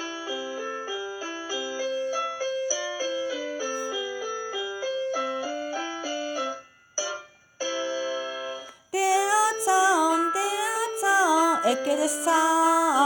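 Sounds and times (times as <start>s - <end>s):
piano chords: 0.0s - 13.0s
person singing: 8.9s - 13.0s.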